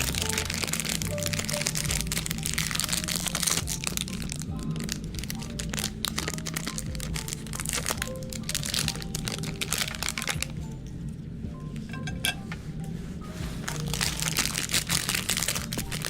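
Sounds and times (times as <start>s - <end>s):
ice cream crushed in meat grinder: 0.0s - 10.5s, 13.9s - 16.0s
background music: 0.0s - 16.0s.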